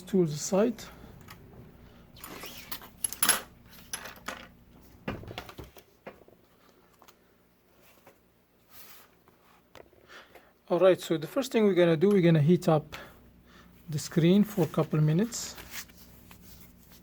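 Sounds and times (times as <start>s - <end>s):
tools clicking and clattering: 2.2s - 4.5s.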